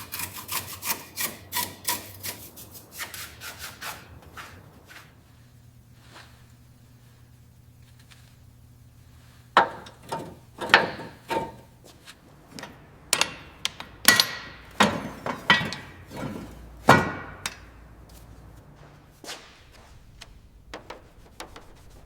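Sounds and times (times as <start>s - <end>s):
tools knocking and clanking on metal: 9.6s - 11.7s, 12.4s - 18.2s.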